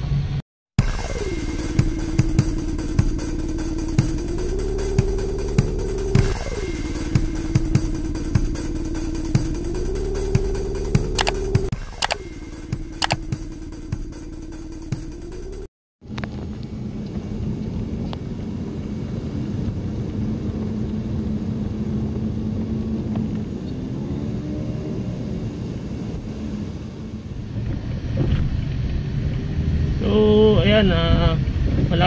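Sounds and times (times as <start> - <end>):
steady low hum: 0.9 - 22.5
car cabin road noise: 16.1 - 29.9.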